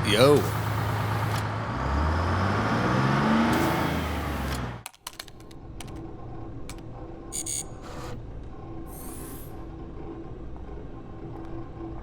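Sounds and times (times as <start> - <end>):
vehicle engine accelerating: 0.0 - 4.8.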